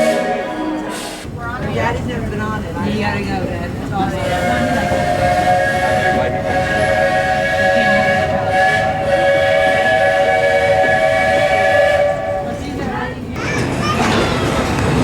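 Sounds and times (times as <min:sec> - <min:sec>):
steam whistle chord blast: 0:00.0 - 0:01.2
moving train rumble: 0:00.0 - 0:15.0.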